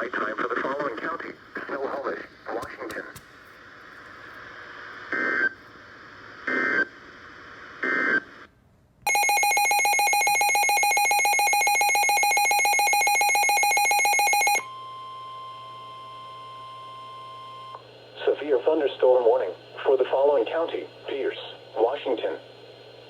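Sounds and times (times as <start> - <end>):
faint radio hiss: 0.0 - 9.0, 17.8 - 23.0
data bursts: 9.1 - 14.6
steady warning alarm tone: 9.1 - 17.8.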